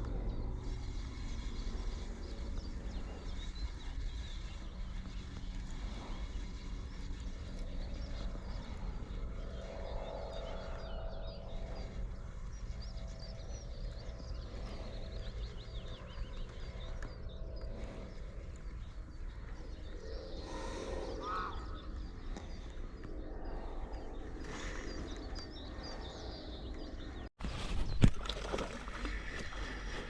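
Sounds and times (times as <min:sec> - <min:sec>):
small birds chirping: 0:00.0 - 0:29.1
low rumble: 0:00.0 - 0:30.0
wavering bird call: 0:20.4 - 0:22.1.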